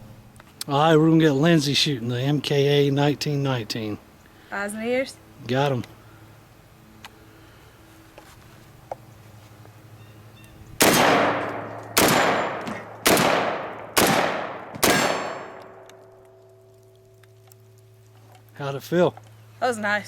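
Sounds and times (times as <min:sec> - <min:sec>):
shotgun shots echoing: 0:10.8 - 0:15.9
steel targets ringing: 0:10.9 - 0:12.6, 0:14.8 - 0:15.6.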